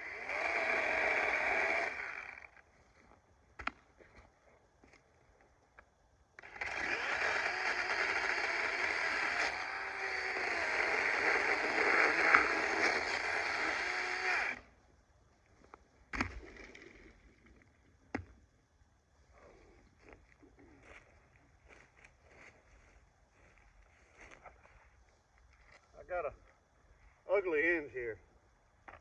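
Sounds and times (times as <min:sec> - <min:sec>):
chainsaw cutting wood: 0:00.0 - 0:02.6, 0:06.4 - 0:14.7.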